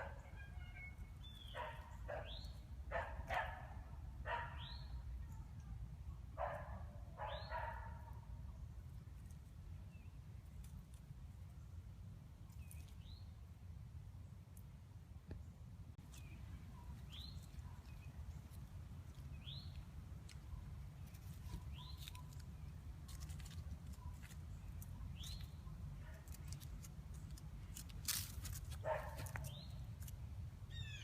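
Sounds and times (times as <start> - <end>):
squirrel calling: 0.0 - 3.6, 16.0 - 31.0.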